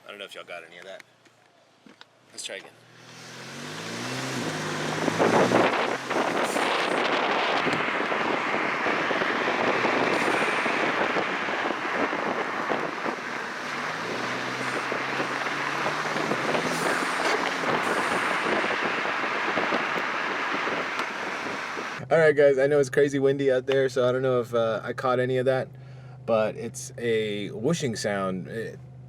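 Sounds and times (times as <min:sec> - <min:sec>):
road noise: 0:00.0 - 0:29.0
low engine hum: 0:02.8 - 0:22.1, 0:23.8 - 0:29.0
wind buffeting microphone: 0:04.0 - 0:22.0.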